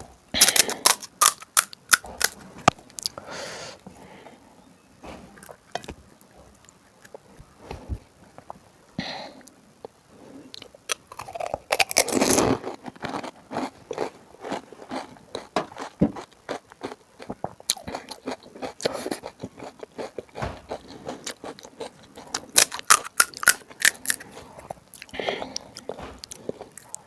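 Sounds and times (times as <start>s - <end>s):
crisp shells crunching: 0.4s - 3.1s, 10.9s - 27.0s
wet chewing: 10.5s - 27.0s.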